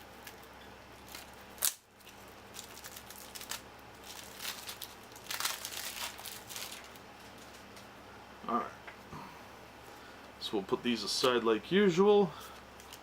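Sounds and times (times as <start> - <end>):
wrapper and cards crinkling: 0.2 - 7.9, 12.4 - 13.0.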